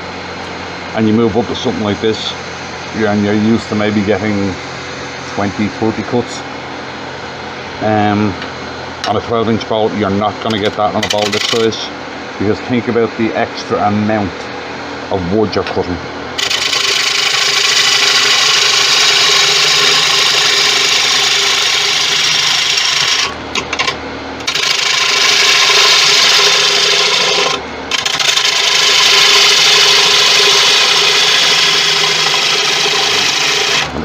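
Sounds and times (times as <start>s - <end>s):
lathe humming: 0.0s - 34.0s
gouge shearing wood on lathe: 10.4s - 11.8s, 16.4s - 34.0s.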